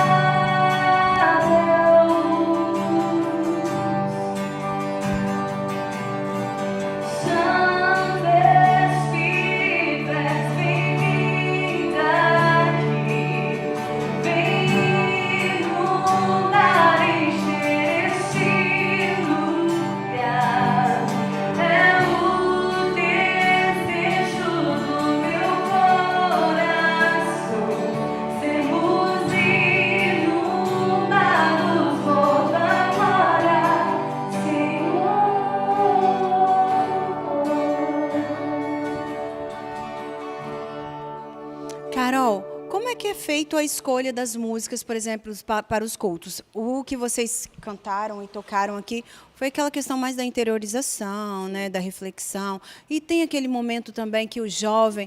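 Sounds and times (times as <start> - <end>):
acoustic guitar: 0.0 - 55.0
group singing a slow song: 7.1 - 39.6.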